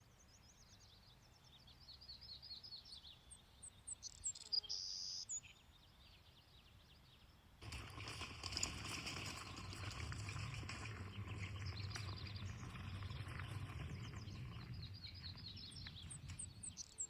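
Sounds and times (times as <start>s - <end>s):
birds chirping and trilling: 1.5s - 6.8s, 9.2s - 17.0s.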